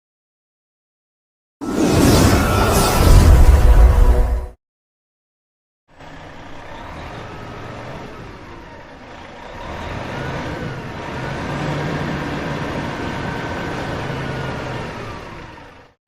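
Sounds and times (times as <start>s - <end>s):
vehicle engine running: 5.9s - 16.0s.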